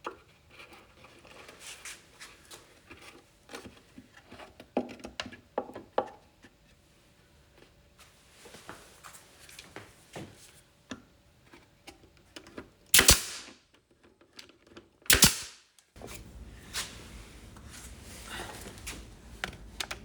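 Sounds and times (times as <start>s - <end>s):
loud sharp strikes on wood: 13.0s - 13.5s, 15.1s - 15.6s.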